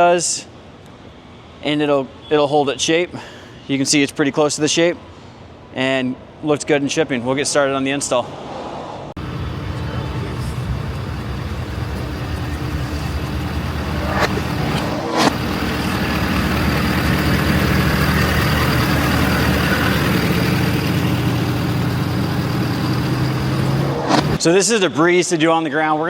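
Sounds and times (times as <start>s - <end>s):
truck engine running: 9.2s - 24.4s.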